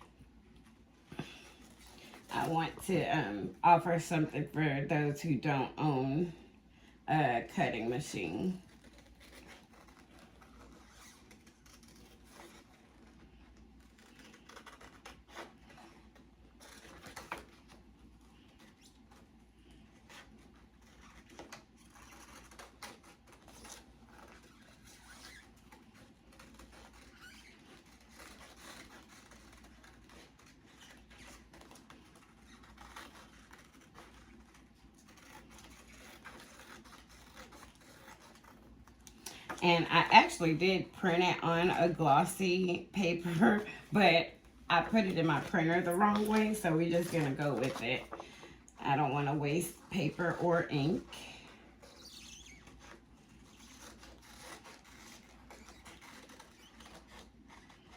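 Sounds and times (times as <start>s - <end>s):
scissors snipping paper: 25.6s - 39.6s.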